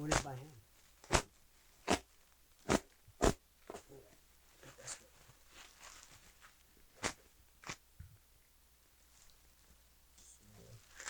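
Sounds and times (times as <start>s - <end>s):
scraping and rustling: 0.0s - 7.8s.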